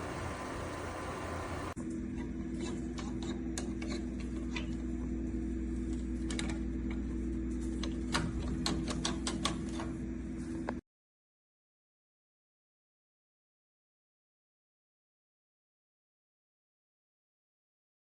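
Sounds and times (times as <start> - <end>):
low electrical hum: 0.0 - 10.8.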